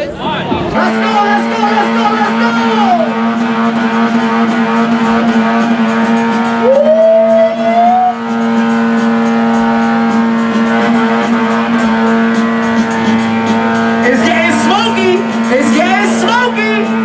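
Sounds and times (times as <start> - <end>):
car engine at high revs: 0.7 - 17.0.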